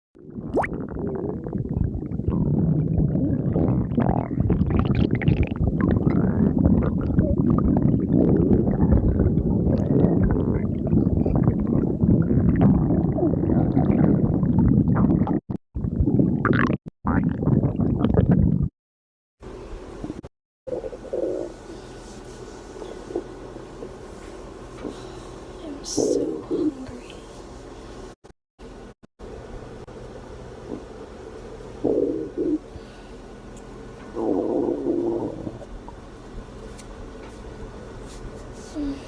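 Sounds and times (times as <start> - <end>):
stomach growling: 0.2 - 18.7, 20.0 - 21.8, 22.8 - 24.0, 30.6 - 30.9, 31.8 - 32.7, 34.0 - 36.1.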